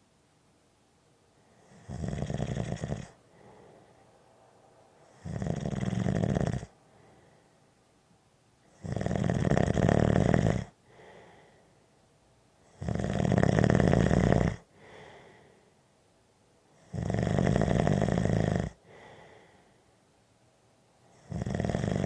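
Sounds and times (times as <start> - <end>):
loud snores: 1.6 - 3.2, 5.0 - 6.8, 8.7 - 11.1, 12.7 - 15.2, 16.8 - 19.3, 21.1 - 22.0
quiet breath out: 3.1 - 5.2, 6.8 - 7.8, 10.7 - 12.1, 14.6 - 15.9, 18.7 - 20.1.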